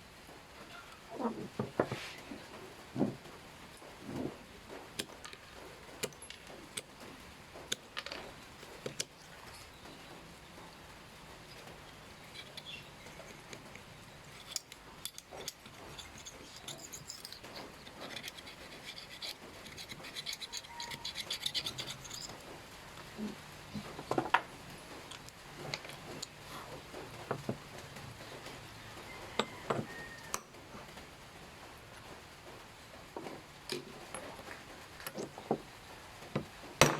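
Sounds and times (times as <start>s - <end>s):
scratching and rubbing: 1.1s - 5.7s, 11.5s - 24.0s.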